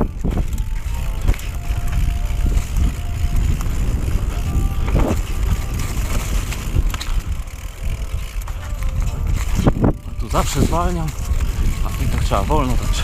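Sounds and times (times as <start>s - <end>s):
bike rattles and knocks: 0.0s - 13.0s
bike riding rumble: 0.0s - 13.0s.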